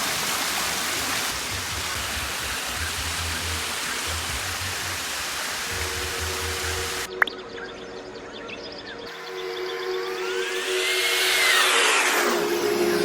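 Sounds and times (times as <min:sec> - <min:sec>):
rushing water: 0:00.0 - 0:07.2.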